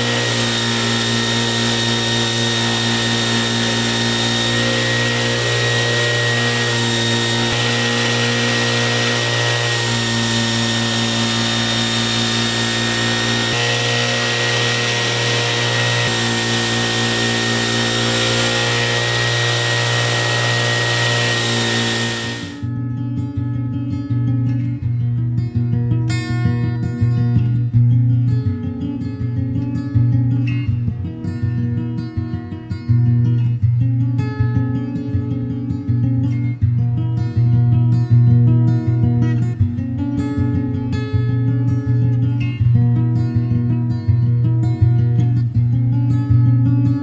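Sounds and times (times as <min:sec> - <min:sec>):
electric power tool running: 0:00.0 - 0:22.6.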